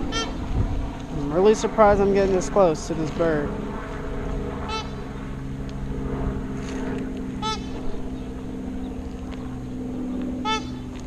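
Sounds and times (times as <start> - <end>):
bird harsh calls: 0.0 - 0.5, 4.6 - 5.4, 7.4 - 11.0
boat motor humming: 0.0 - 11.0.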